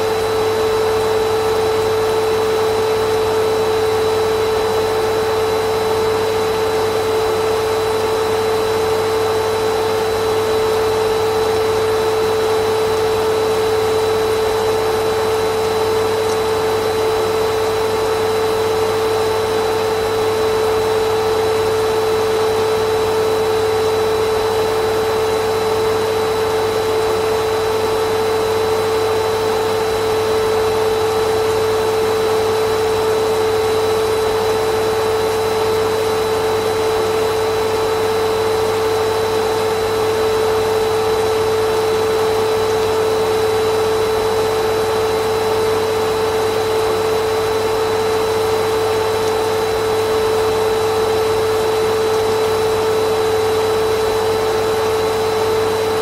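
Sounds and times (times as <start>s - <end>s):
vacuum cleaner motor running: 0.0s - 56.0s.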